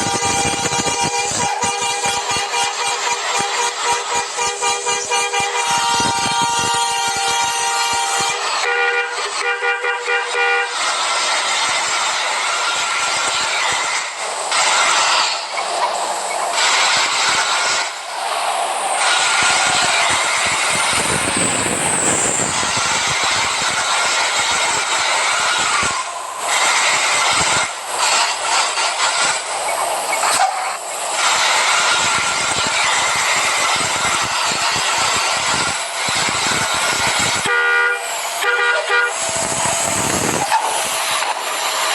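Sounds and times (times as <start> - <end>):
bus air horn blasts: 0.0 - 10.9, 37.2 - 40.7
loud rushing noise: 10.6 - 41.9.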